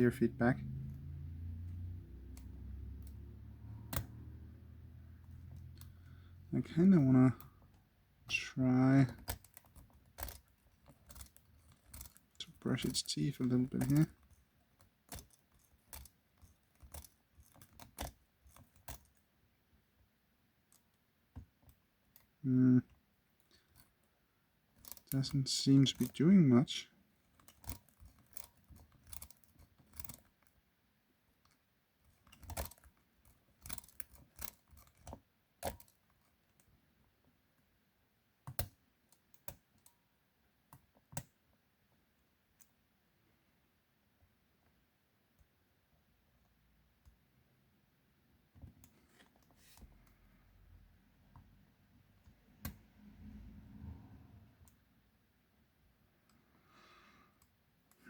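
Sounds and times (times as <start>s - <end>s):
lock picks scraping: 7.1s - 19.2s, 24.7s - 30.5s, 31.4s - 36.6s
lock picks clicking: 9.0s - 19.2s, 24.7s - 26.3s, 27.2s - 30.5s, 31.4s - 36.7s.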